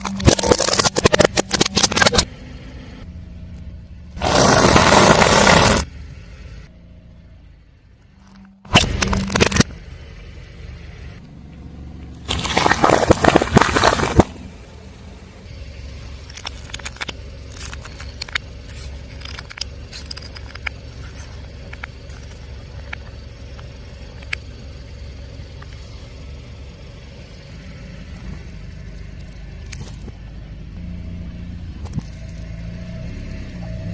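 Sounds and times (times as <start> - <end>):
tyre crushing brittle objects: 0.0 - 2.3, 4.2 - 5.9, 8.7 - 9.7, 12.2 - 14.3, 16.2 - 23.1
car engine rumbling low: 0.0 - 33.9.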